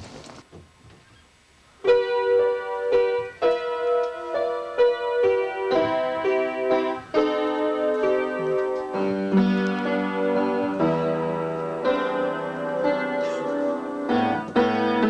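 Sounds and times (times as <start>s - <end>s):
solo piano music: 1.8s - 15.0s.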